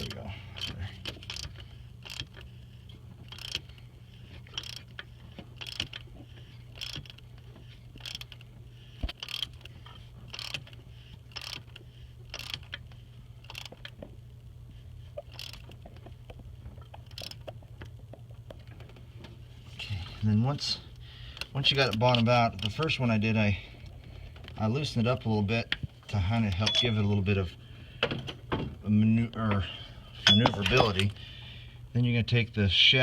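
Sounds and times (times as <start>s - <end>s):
ratchet wrench clicking: 0.0s - 2.6s, 3.2s - 14.0s, 15.3s - 15.8s, 17.0s - 17.5s, 21.4s - 23.0s
steady low hum: 0.0s - 33.0s.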